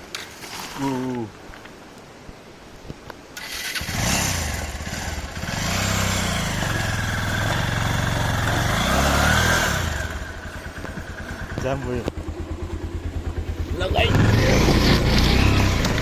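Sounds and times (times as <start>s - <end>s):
motorcycle engine revving: 3.4s - 16.0s.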